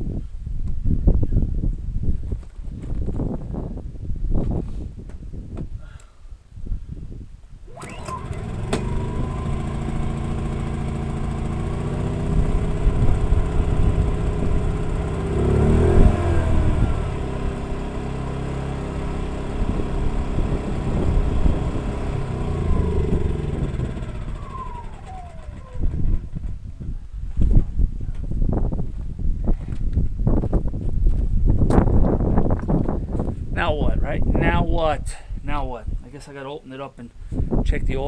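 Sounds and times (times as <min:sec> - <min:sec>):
generator engine running unevenly: 0:07.7 - 0:26.6.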